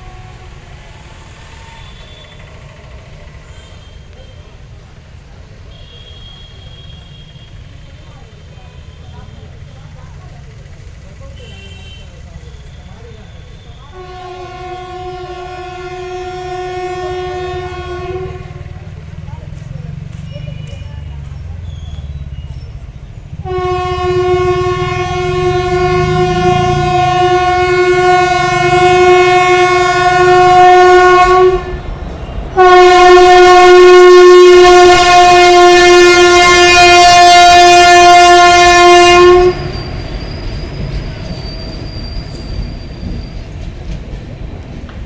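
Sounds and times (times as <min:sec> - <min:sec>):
moving train rumble: 0:00.0 - 0:45.0
locomotive horn blasts: 0:13.9 - 0:18.8, 0:23.4 - 0:31.9, 0:32.6 - 0:39.8.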